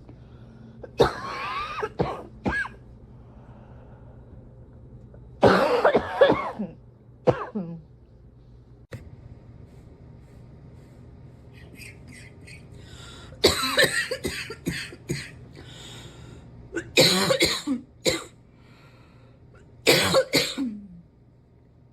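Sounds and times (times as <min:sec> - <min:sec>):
person coughing: 0:00.8 - 0:02.8, 0:05.4 - 0:07.8, 0:11.6 - 0:15.4, 0:16.8 - 0:18.4, 0:19.9 - 0:21.0.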